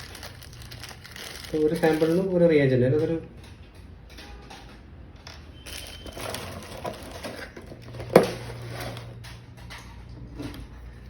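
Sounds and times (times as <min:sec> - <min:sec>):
packaging rustling and clattering: 0:00.0 - 0:02.4, 0:05.6 - 0:10.7.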